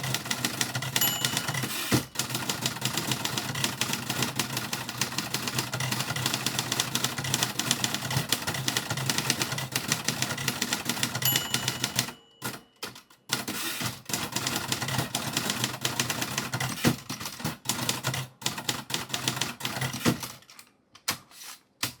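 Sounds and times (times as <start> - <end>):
typewriter typing clatter: 0.0 - 20.6
typewriter bell ding: 0.9 - 2.8, 11.0 - 13.2.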